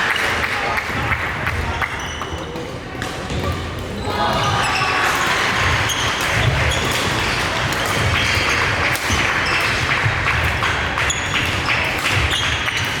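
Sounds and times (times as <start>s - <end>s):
sports hall din: 0.0s - 13.0s
shoe squeaks: 5.9s - 9.8s, 11.0s - 13.0s.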